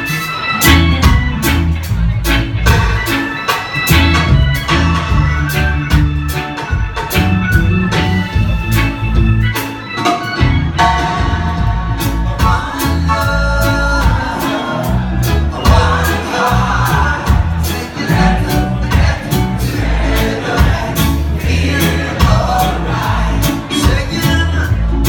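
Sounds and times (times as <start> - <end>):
reggae band playing live: 0.0 - 25.0
heavy bass line: 0.6 - 3.1, 3.9 - 9.6, 10.4 - 25.0
drum strikes: 15.5 - 24.3.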